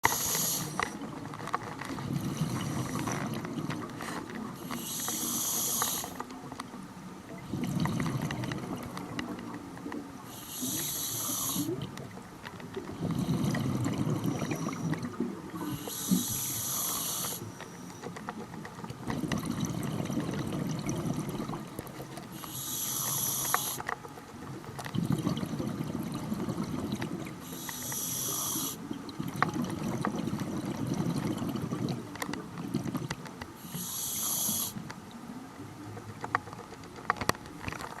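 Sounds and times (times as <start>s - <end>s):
regulator hiss on inhale: 0.0s - 1.0s, 4.0s - 6.3s, 10.2s - 11.8s, 15.6s - 18.1s, 22.3s - 23.9s, 27.4s - 28.8s, 33.6s - 34.8s
exhaled bubbles rumbling: 0.9s - 4.7s, 7.3s - 10.2s, 11.4s - 16.3s, 18.9s - 22.2s, 24.5s - 27.6s, 28.8s - 33.3s.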